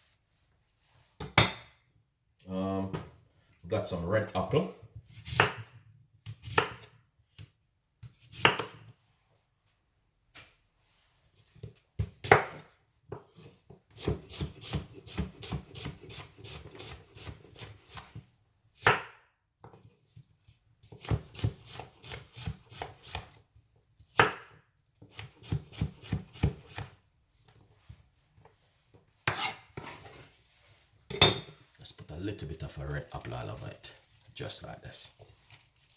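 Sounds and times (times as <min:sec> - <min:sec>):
knife chopping on cutting board: 0:05.1 - 0:07.0, 0:08.0 - 0:08.9, 0:11.7 - 0:18.2, 0:18.8 - 0:19.2, 0:20.8 - 0:23.4, 0:24.1 - 0:27.0, 0:29.2 - 0:30.0.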